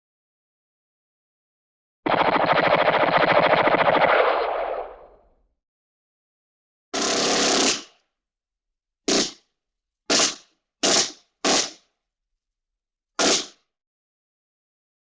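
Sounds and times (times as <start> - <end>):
cartoon gunshots: 2.1 - 5.2, 13.2 - 13.5.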